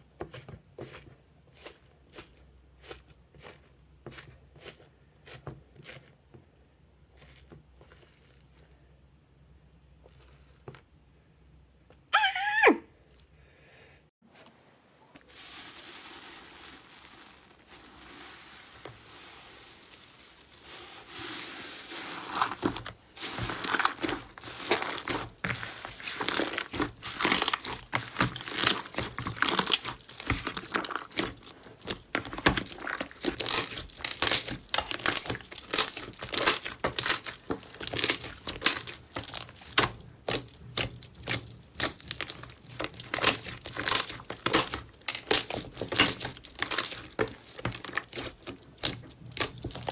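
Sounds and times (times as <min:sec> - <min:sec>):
slime crackling and popping: 0:22.4 - 0:49.9.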